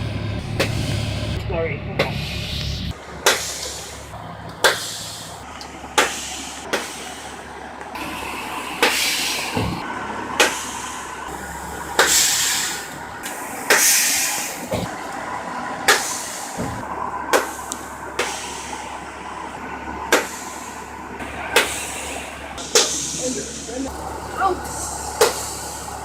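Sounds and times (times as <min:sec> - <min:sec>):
bus engine idling: 0:00.0 - 0:26.0
air brake pops: 0:00.6 - 0:01.2, 0:02.0 - 0:04.0, 0:04.6 - 0:05.4, 0:06.0 - 0:07.2, 0:08.8 - 0:10.9, 0:12.0 - 0:14.9, 0:15.9 - 0:18.8, 0:20.1 - 0:20.7, 0:21.5 - 0:23.7, 0:24.7 - 0:25.8
air hissing: 0:02.1 - 0:15.0, 0:15.9 - 0:19.0, 0:20.1 - 0:26.0.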